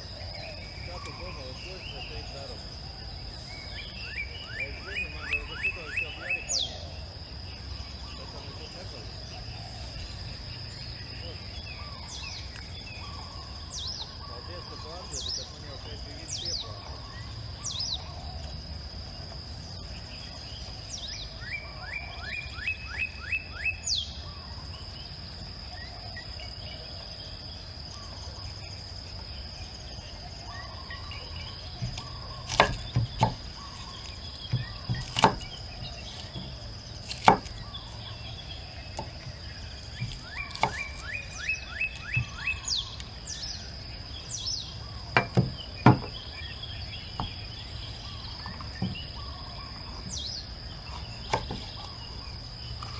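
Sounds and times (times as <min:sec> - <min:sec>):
high insect drone: 0:00.0 - 0:52.9
bird trilling: 0:30.5 - 0:43.7
wood being chopped: 0:31.7 - 0:42.7, 0:45.1 - 0:46.4, 0:47.0 - 0:47.5, 0:50.9 - 0:52.0.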